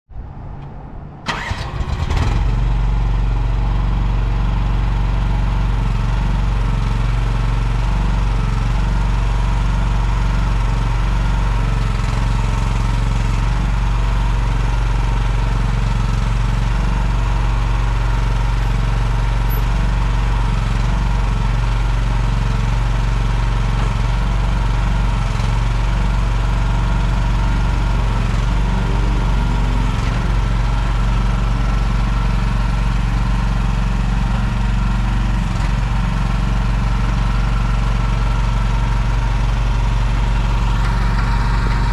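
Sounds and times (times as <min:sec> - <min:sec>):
excavator engine starting and idling: 0:00.4 - 0:41.9.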